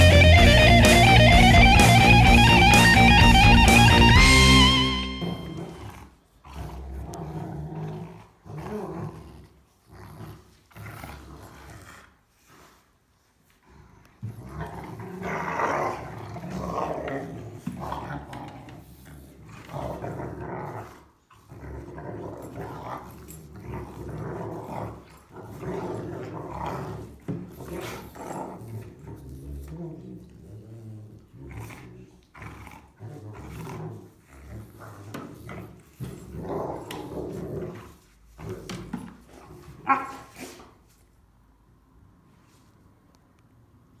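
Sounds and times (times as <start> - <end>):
dogs growling while play-fighting: 5.2 - 12.8, 13.6 - 40.8.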